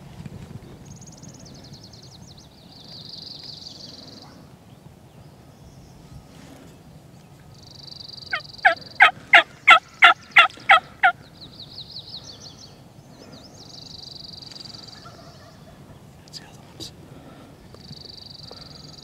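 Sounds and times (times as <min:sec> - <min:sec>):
songbirds trilling and warbling: 0:00.6 - 0:19.0
turkey yelping: 0:08.3 - 0:11.2.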